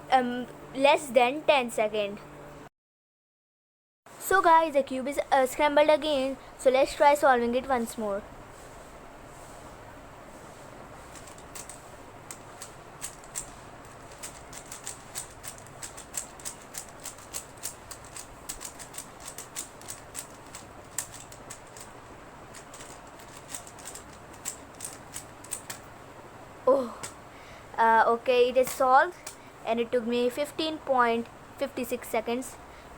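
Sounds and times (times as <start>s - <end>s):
puzzle cube plastic clicks: 11.1s - 21.9s, 22.6s - 25.9s.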